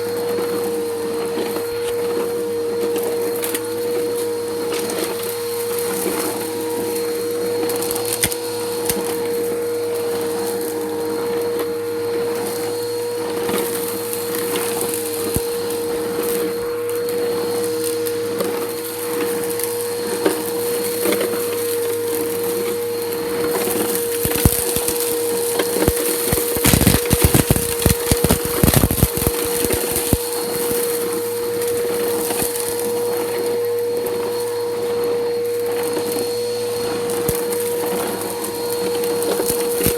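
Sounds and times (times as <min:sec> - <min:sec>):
vacuum cleaner motor whine: 0:00.0 - 0:39.9
debris crackling up vacuum nozzle: 0:03.0 - 0:10.7, 0:21.2 - 0:33.4, 0:35.5 - 0:39.9.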